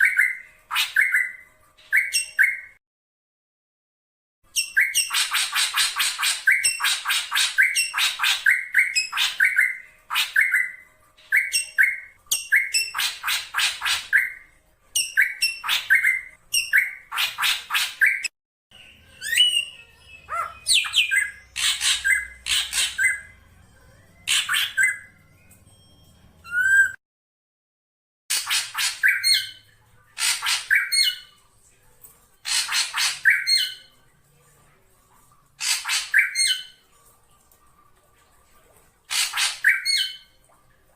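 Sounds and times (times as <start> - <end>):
bird whistles and chatter: 0.0 - 2.8, 4.5 - 14.4, 15.0 - 25.7, 26.4 - 27.0, 28.3 - 29.6, 30.2 - 31.3, 32.4 - 33.9, 35.6 - 36.8, 39.1 - 40.3
bird harsh calls: 20.3 - 23.3.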